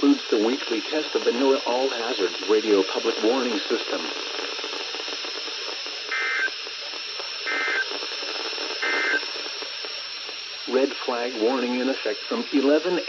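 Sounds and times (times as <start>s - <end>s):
radio static hissing: 0.0s - 13.0s
digital data tone bursts: 6.1s - 6.6s, 7.4s - 9.4s.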